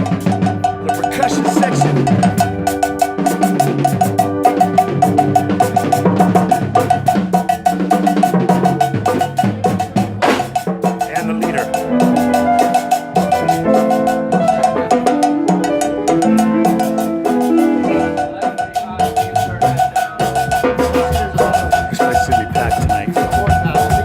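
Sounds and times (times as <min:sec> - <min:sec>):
drum kit and hand percussion: 0:00.0 - 0:24.0
bass line: 0:18.8 - 0:24.0.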